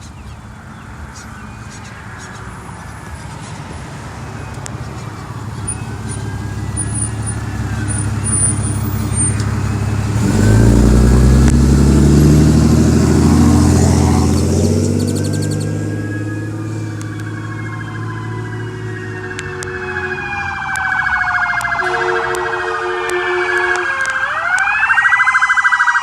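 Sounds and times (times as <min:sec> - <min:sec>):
ambulance approaching: 0:00.4 - 0:26.0
deep chord train horn: 0:21.8 - 0:24.0.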